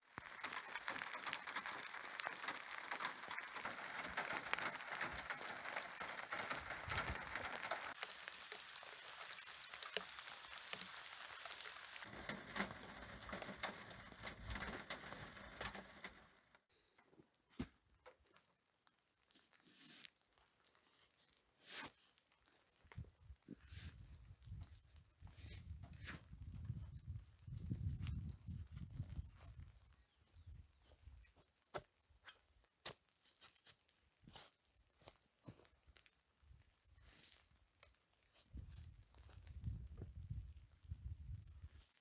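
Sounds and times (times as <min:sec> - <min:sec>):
scattered water drips: 0:00.0 - 0:16.4
rain pattering: 0:00.0 - 0:16.6.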